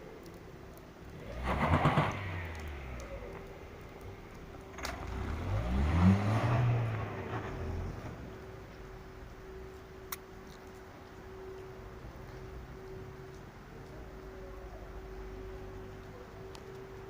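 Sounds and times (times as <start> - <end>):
car engine revving: 1.1 - 8.8.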